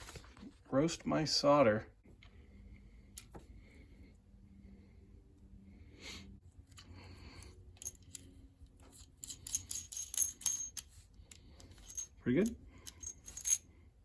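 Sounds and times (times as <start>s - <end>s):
small metal parts clinking: 7.7s - 13.7s.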